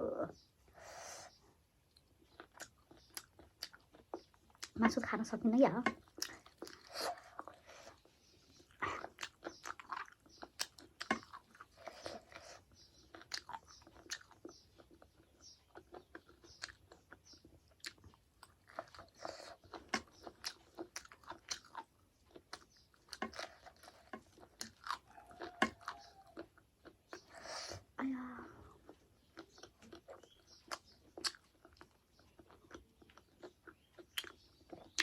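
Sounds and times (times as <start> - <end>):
close chewing and biting: 1.9 - 35.0
wet mouth clicks and crunches: 28.8 - 35.0.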